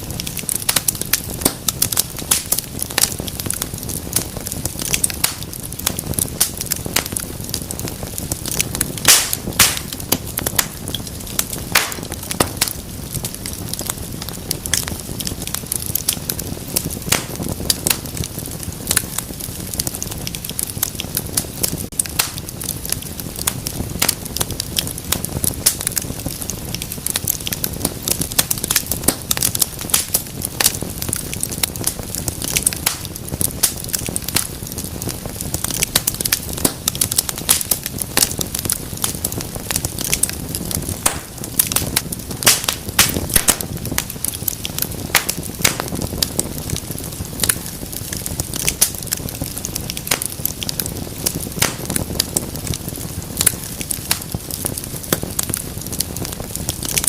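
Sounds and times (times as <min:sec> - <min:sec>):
wood fire crackling and popping: 0:00.0 - 0:57.0.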